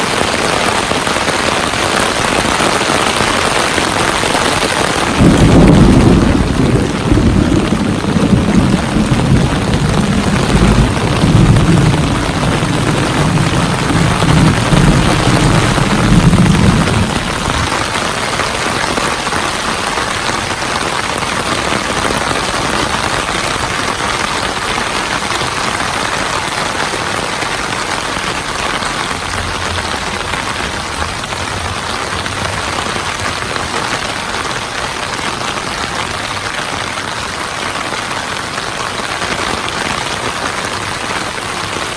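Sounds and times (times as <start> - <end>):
heavy rain pouring: 0.0 - 41.9
distant thunder rumble: 5.0 - 25.3, 27.4 - 34.1.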